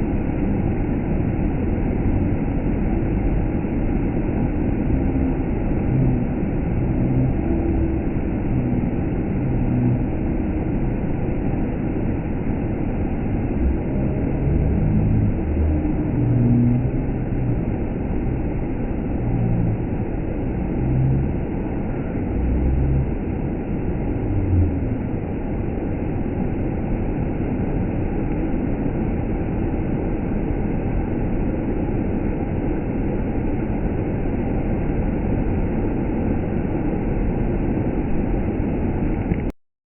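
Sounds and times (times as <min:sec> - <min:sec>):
waterfall rushing: 0:03.0 - 0:26.6.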